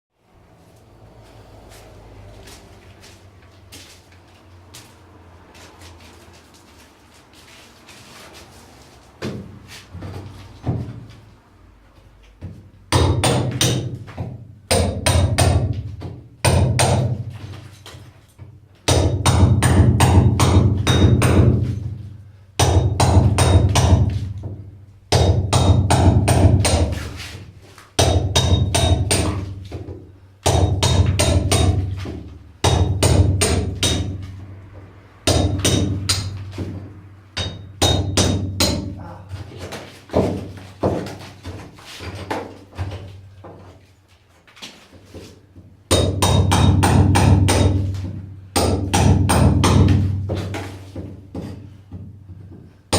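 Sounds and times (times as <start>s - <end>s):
hammer striking chisel into wall: 12.4s - 17.3s, 18.8s - 22.0s, 22.6s - 27.2s, 28.0s - 34.4s, 35.2s - 39.0s, 45.9s - 52.7s.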